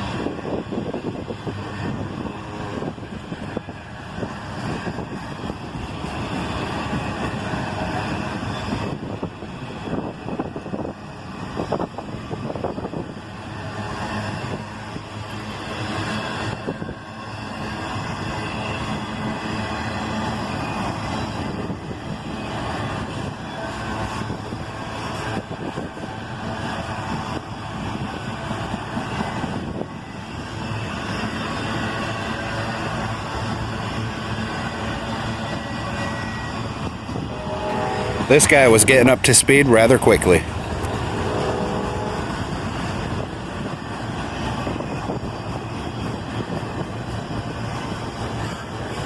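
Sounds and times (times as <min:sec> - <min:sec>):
locomotive engines rumbling: 0:00.0 - 0:49.0
train rolling: 0:13.2 - 0:49.0.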